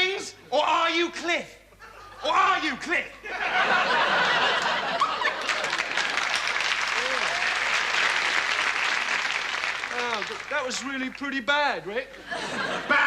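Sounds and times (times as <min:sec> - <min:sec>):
audience laughing: 0:03.1 - 0:06.2, 0:12.1 - 0:13.0
audience applauding: 0:04.3 - 0:11.3.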